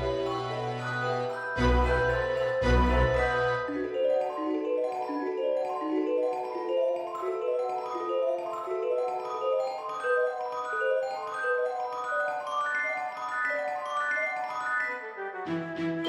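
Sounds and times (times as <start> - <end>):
mallet percussion melody: 0.0 - 15.2
bass-backed music passage: 1.6 - 3.7.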